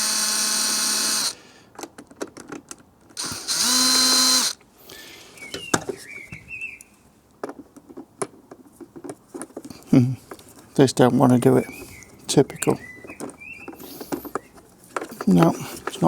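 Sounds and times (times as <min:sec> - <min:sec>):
power screwdriver spinning: 0:00.0 - 0:01.4, 0:03.2 - 0:04.6.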